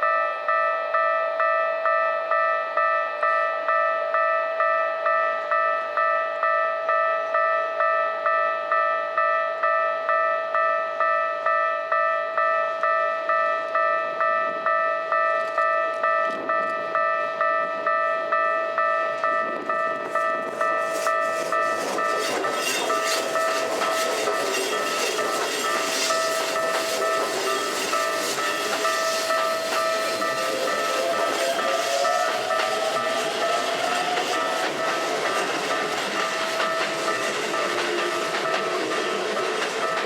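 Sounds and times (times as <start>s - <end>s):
level crossing warning bell: 0.0s - 40.0s
train wheels on rails: 0.0s - 40.0s
train motor whine: 19.1s - 40.0s.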